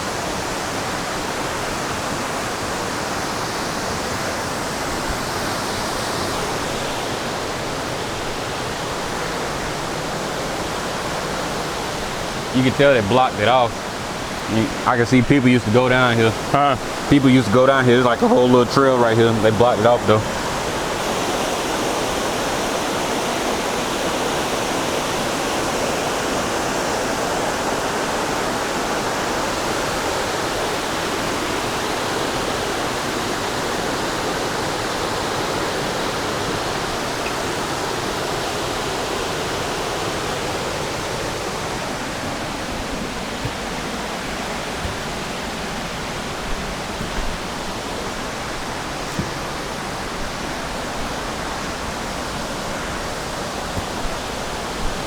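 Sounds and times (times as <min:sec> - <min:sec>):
waterfall rushing: 0:00.0 - 0:55.0
faint knocks: 0:42.8 - 0:51.2.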